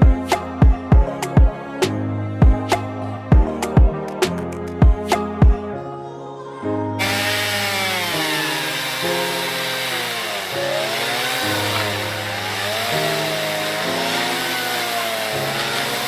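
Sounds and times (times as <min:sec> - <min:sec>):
background music with chords: 0:00.0 - 0:16.0
chainsaw cutting wood: 0:07.0 - 0:16.0.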